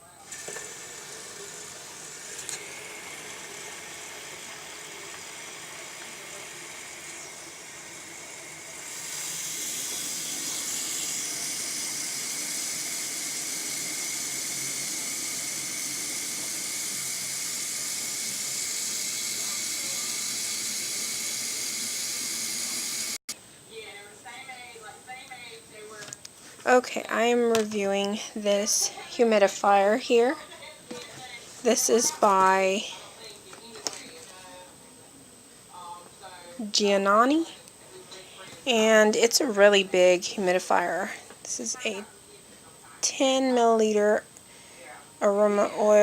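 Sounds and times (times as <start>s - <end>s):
tap water running into tank: 0.2s - 23.2s.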